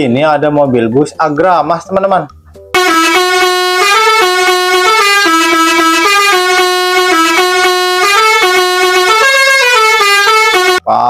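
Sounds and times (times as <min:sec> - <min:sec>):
bus air horn playing a tune: 0:02.8 - 0:10.8.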